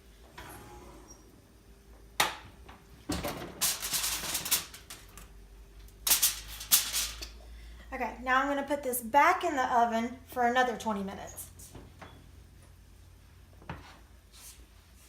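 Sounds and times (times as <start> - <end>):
crackling and rattling: 3.1 - 5.3, 6.0 - 7.3.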